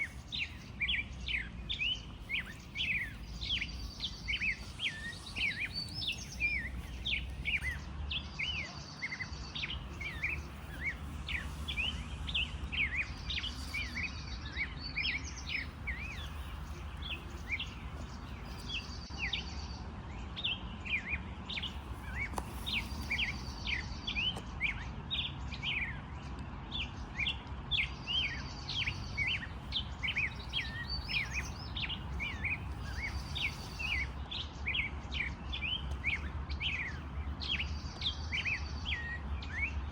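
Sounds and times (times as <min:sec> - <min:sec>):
steady low rumble: 0:00.0 - 0:08.6, 0:09.2 - 0:19.4
buzzy bird trill: 0:00.0 - 0:19.5, 0:28.8 - 0:39.3
birds chirping: 0:00.0 - 0:39.9.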